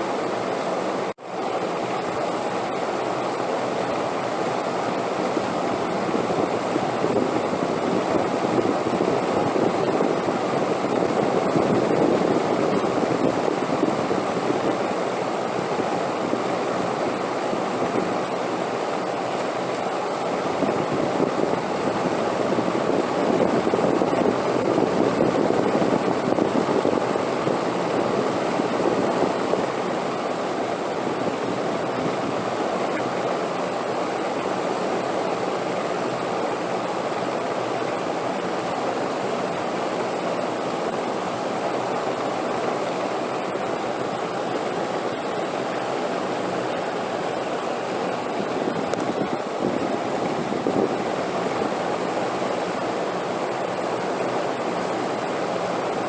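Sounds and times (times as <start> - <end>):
rushing wind: 0.0 - 56.0.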